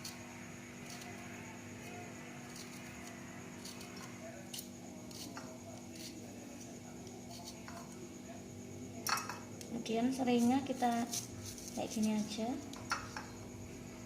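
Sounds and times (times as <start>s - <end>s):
steady low hum: 0.0s - 14.0s
knife scraping on cutting board: 2.5s - 6.3s, 7.2s - 7.9s, 10.4s - 13.0s.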